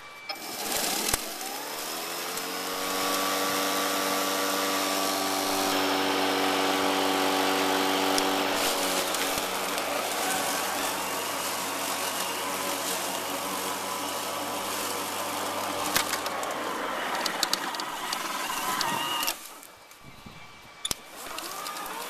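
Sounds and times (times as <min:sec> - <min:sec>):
lawn mower whirring: 0:00.0 - 0:22.0
sharp clicks: 0:15.9 - 0:19.4.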